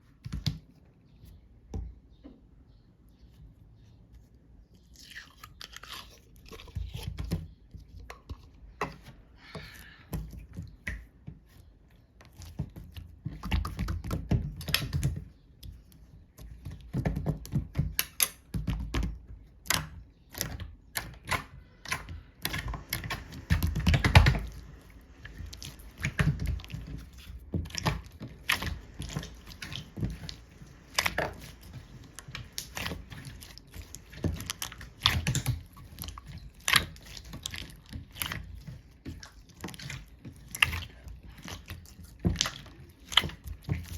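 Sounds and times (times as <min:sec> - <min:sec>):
slime squishing: 0:03.2 - 0:43.9.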